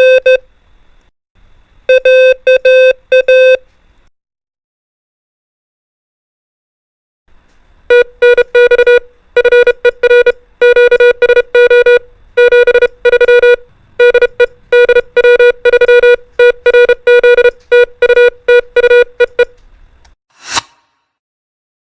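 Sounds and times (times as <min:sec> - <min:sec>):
morse code beeps: 0:00.0 - 0:00.4, 0:01.9 - 0:03.6, 0:07.9 - 0:19.6.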